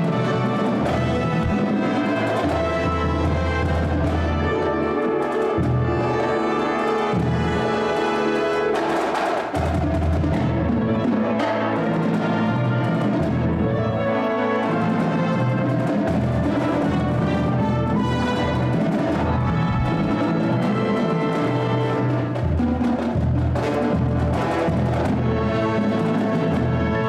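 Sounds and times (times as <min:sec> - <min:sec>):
orchestral music with brass: 0:00.0 - 0:27.0.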